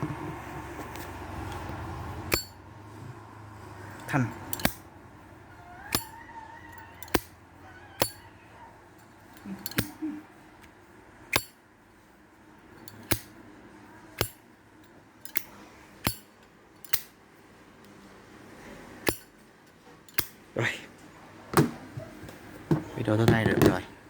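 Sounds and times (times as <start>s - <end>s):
lighter lid clicking: 9.6s - 9.9s.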